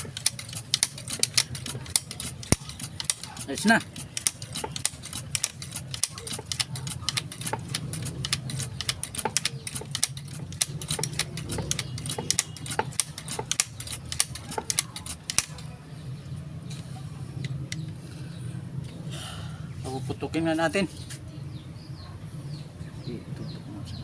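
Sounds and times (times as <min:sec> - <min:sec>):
metallic clicking of small parts: 0:00.0 - 0:15.7.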